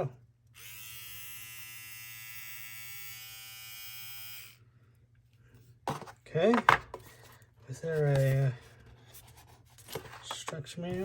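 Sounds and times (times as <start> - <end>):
small motor buzzing: 0.6 - 4.6.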